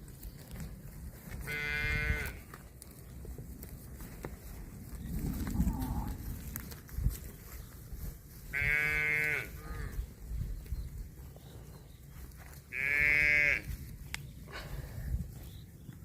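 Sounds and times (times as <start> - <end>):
calf mooing: 1.5 - 2.4, 12.7 - 13.6.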